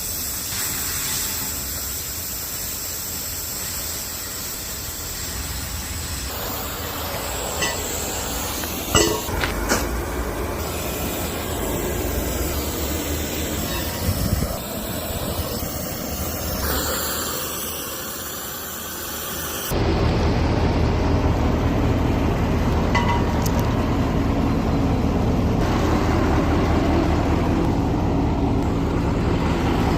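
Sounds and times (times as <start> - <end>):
cutting torch hissing: 0.0 - 19.9.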